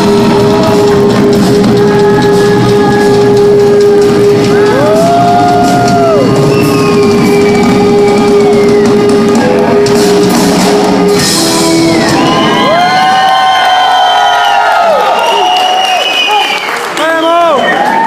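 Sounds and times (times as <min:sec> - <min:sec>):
electric guitar: 0:00.0 - 0:13.6
drum kit: 0:00.0 - 0:14.6.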